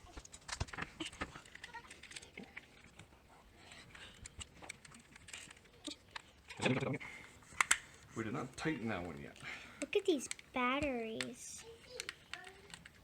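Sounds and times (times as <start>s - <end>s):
plastic parts clicking and tapping: 0.2s - 3.1s, 3.9s - 6.7s, 7.6s - 7.8s, 9.8s - 13.0s.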